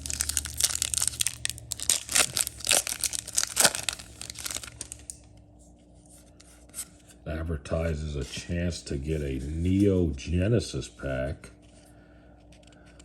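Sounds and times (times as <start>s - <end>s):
foil wrapper crinkling and tearing: 0.0s - 5.2s.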